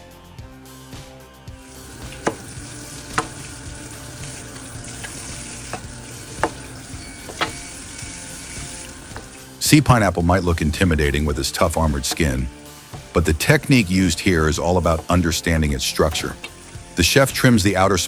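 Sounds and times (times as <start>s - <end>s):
background music: 0.0s - 18.0s
food sizzling: 1.6s - 17.8s
sharp pops in cooking: 2.0s - 4.3s.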